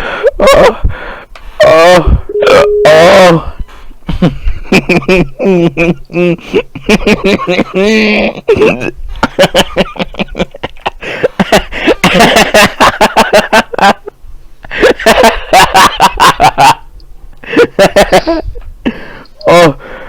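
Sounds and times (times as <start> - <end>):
man laughing hard: 0.0 - 0.9, 4.1 - 19.0.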